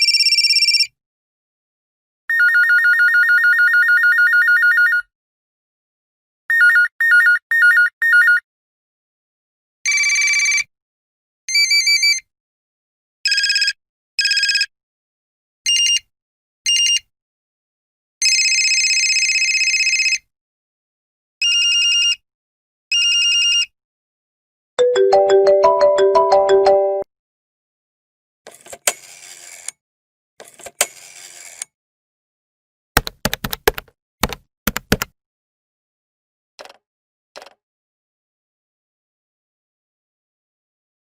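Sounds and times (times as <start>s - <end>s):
telephone ringing: 24.8s - 27.0s.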